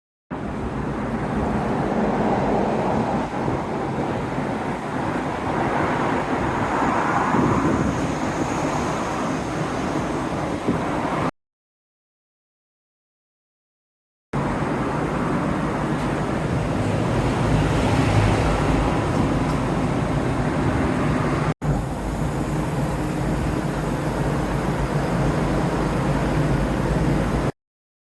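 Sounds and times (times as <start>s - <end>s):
air conditioner fan rushing: 14.4s - 27.5s.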